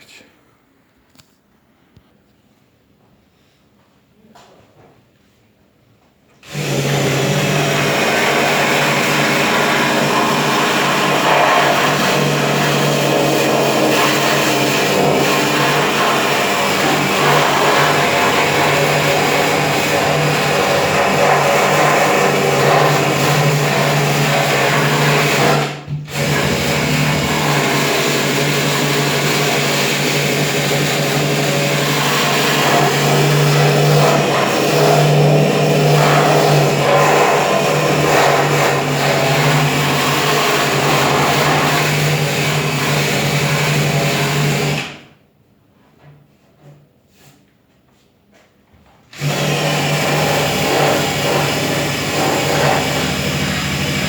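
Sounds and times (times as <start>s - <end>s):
electric sander grinding metal: 6.5s - 25.6s, 26.2s - 44.8s, 49.2s - 54.0s.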